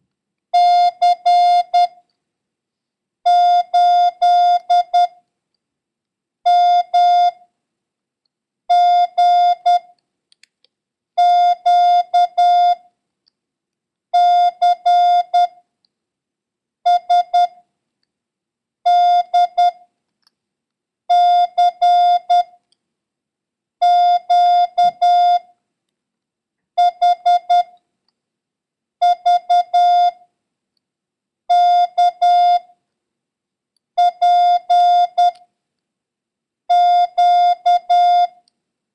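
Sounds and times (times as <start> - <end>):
morse code tone: 0.6 - 2.0, 3.3 - 5.2, 6.5 - 7.4, 8.7 - 9.9, 11.2 - 12.8, 14.2 - 15.6, 16.9 - 17.6, 18.9 - 19.8, 21.1 - 22.6, 23.8 - 25.5, 26.8 - 27.8, 29.0 - 30.2, 31.5 - 32.7, 34.0 - 35.4, 36.7 - 38.4.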